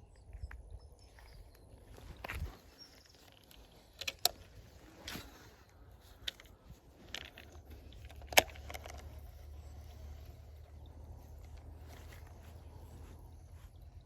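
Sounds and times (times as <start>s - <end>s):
fishing tackle clicking and rattling: 3.0s - 5.3s, 6.0s - 12.4s.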